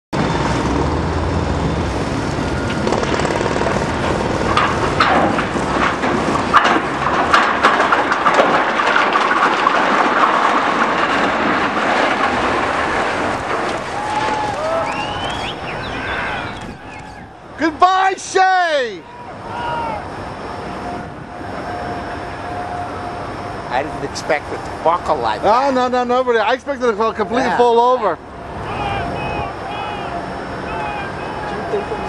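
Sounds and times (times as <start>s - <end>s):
rumble of machinery and debris: 0.2s - 32.0s
structure clanking and crashing: 2.7s - 19.1s.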